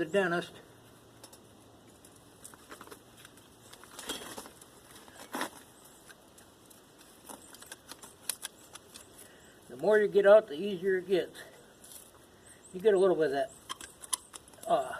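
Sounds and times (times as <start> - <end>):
metal clicks and scrapes: 7.0 - 9.2, 13.6 - 14.7.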